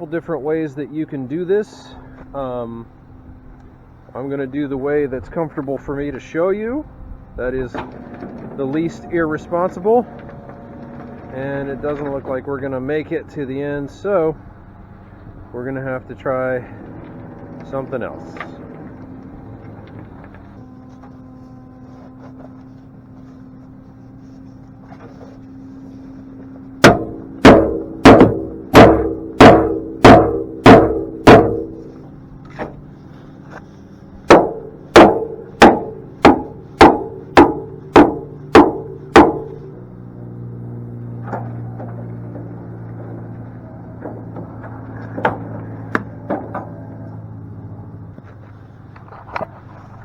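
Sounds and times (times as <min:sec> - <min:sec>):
hammer striking metal: 0:26.8 - 0:32.0, 0:34.3 - 0:39.7.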